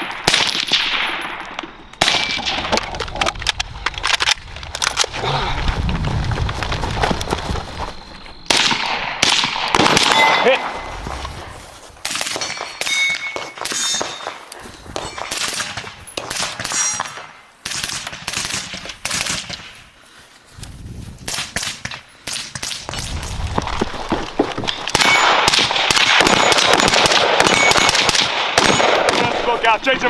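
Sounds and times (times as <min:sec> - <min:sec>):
gunshots: 0:00.0 - 0:02.8, 0:08.4 - 0:11.0, 0:24.9 - 0:30.0
sharp metallic clangs: 0:00.0 - 0:02.9, 0:12.2 - 0:17.4.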